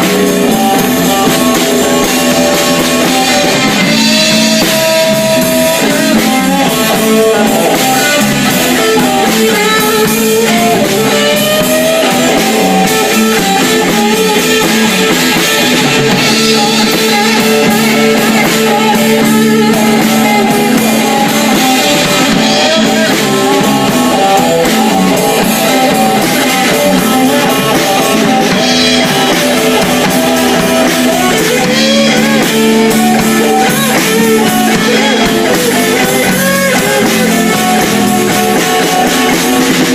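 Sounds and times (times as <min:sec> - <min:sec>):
bass guitar: 0:00.0 - 0:39.9
drum kit: 0:00.0 - 0:39.9
electric guitar lead: 0:00.0 - 0:39.9.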